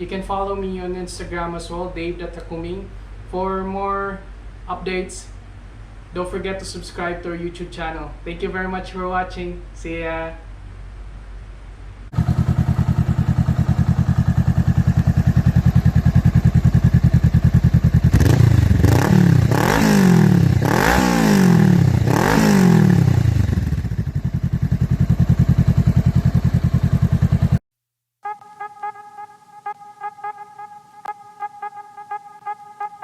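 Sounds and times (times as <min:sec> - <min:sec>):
motorcycle engine idling and revving: 0:12.2 - 0:27.6.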